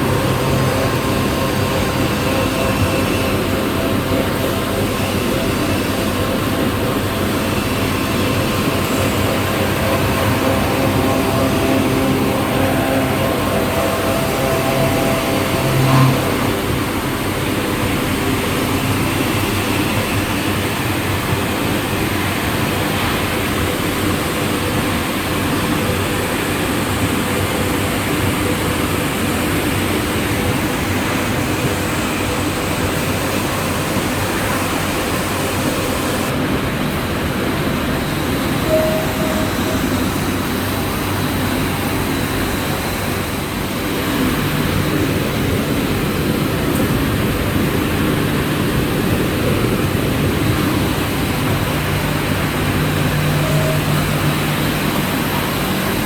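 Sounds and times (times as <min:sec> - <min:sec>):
faint steady tones: 0:00.0 - 0:19.1, 0:38.2 - 0:43.6
recycling machinery running: 0:00.0 - 0:56.0.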